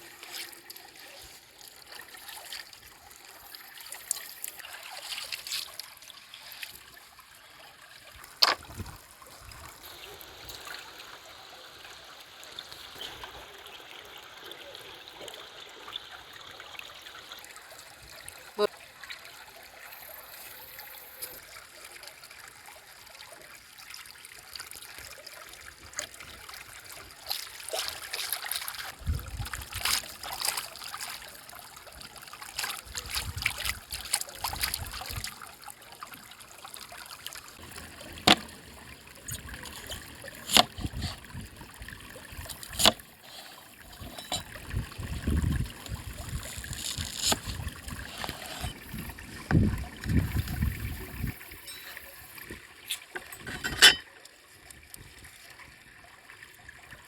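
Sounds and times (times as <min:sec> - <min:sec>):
river water flowing: 0:29.7 - 0:54.6.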